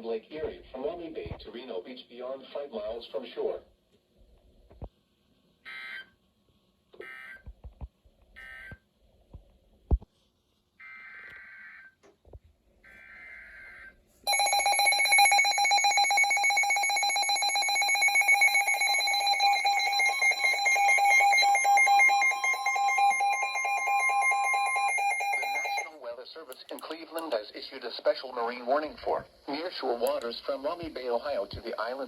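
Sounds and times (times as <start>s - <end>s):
loud steady alert tone: 14.3s - 25.9s.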